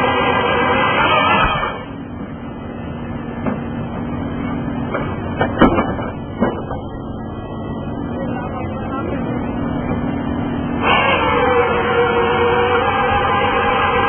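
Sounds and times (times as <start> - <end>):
chainsaw cutting log: 0.0 - 1.9
machine engine and hydraulics: 0.0 - 14.0
loud clunk: 4.9 - 7.0.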